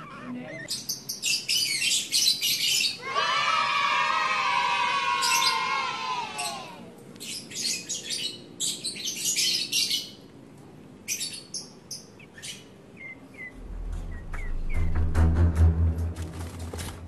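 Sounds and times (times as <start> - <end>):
bird harsh chattering calls: 0.0 - 3.0.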